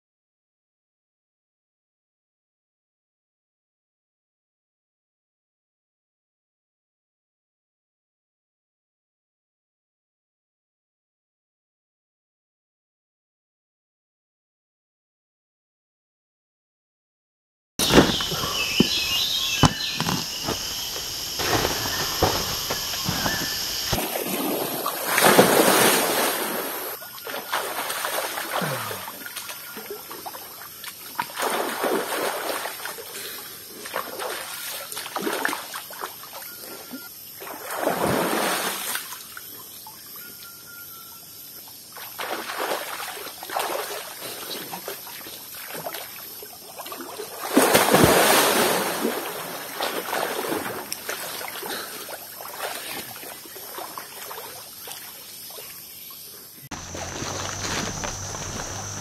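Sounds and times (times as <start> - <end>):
water splashing: 17.8 - 36.6, 42.0 - 55.8, 56.7 - 59.0
running water hiss: 17.8 - 40.6, 41.4 - 59.0.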